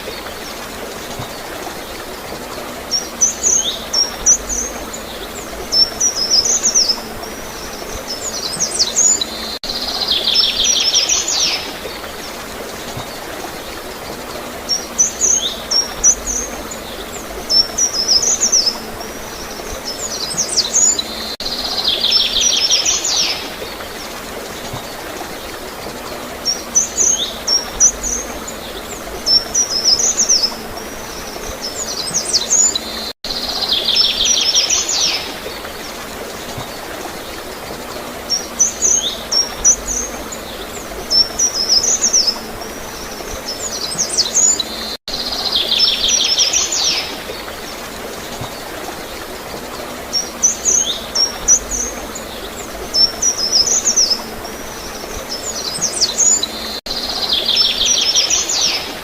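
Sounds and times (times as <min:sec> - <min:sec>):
songbirds chirping: 0:00.0 - 0:59.0
water flowing: 0:00.0 - 0:59.0.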